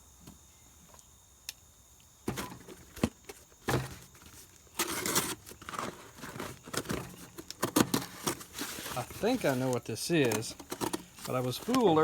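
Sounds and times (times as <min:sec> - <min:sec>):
cardboard rasping scrape: 0:03.7 - 0:09.7.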